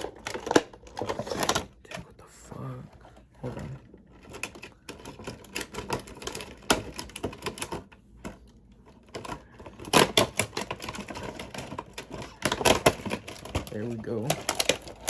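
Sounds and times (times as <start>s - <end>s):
plastic packaging crackling: 0.0s - 2.0s, 8.9s - 15.0s.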